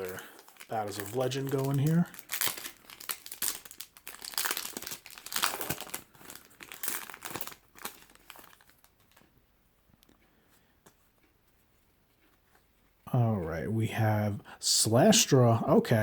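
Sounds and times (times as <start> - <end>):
wrapper crinkling and tearing: 0.0 - 9.4.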